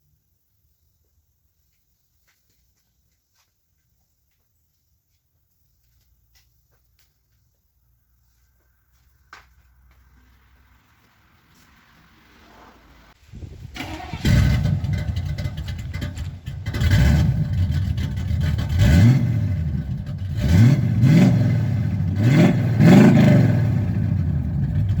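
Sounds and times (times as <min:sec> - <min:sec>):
car engine starting: 0:10.1 - 0:25.0
car engine revving: 0:13.8 - 0:25.0.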